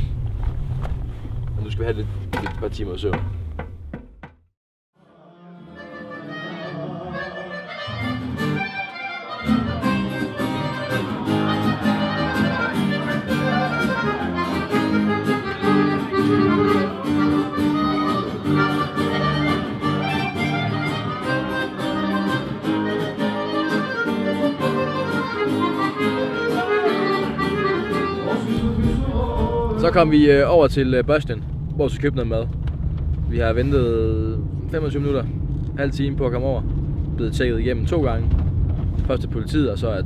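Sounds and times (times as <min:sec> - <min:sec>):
instrumental music with sustained chords: 0:07.4 - 0:28.4.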